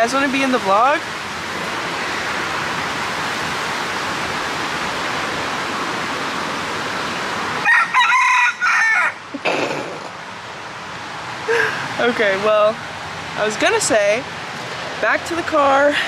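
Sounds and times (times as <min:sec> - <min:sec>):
falling water rushing: 0:00.0 - 0:16.0
rooster crowing: 0:07.6 - 0:09.2.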